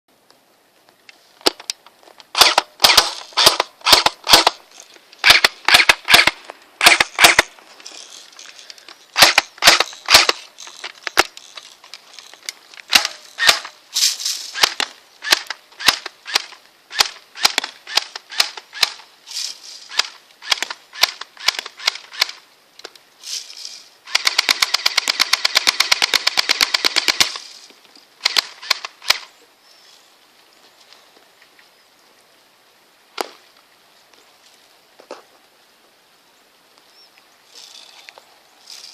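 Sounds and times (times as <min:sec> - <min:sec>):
airsoft gun automatic burst: 0:02.3 - 0:04.6, 0:05.2 - 0:07.5, 0:09.2 - 0:11.3, 0:24.0 - 0:27.6
airsoft gun single shots: 0:02.4 - 0:04.6, 0:09.2 - 0:10.4.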